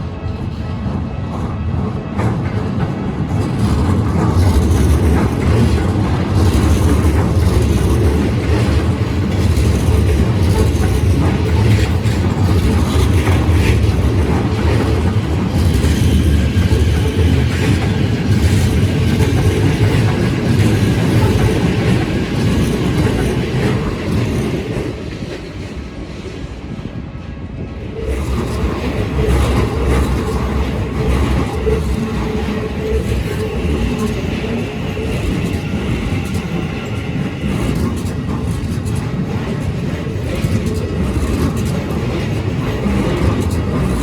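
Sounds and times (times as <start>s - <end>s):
train wheels clattering on rails: 0.0s - 27.0s, 27.6s - 44.0s.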